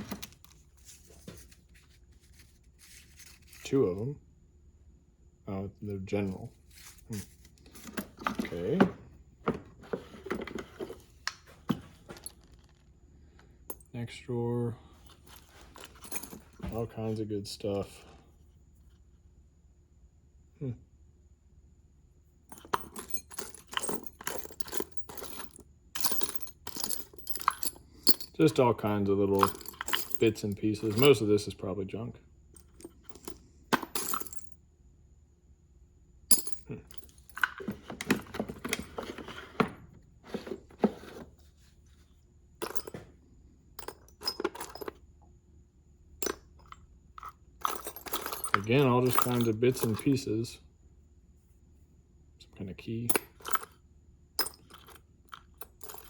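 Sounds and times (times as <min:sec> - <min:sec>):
metal parts clinking in a drawer: 0:00.0 - 0:01.6, 0:06.2 - 0:12.8, 0:15.0 - 0:17.2, 0:22.5 - 0:31.6, 0:32.6 - 0:34.6, 0:36.3 - 0:41.3, 0:42.6 - 0:43.1, 0:43.8 - 0:45.0, 0:46.2 - 0:50.5, 0:53.0 - 0:53.8, 0:54.4 - 0:56.0.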